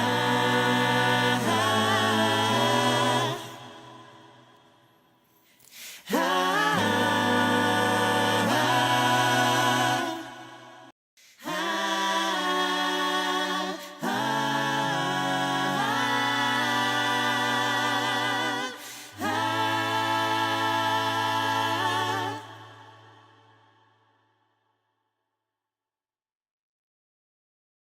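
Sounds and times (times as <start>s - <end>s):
voices singing held chords: 0.0s - 4.7s, 6.0s - 23.8s.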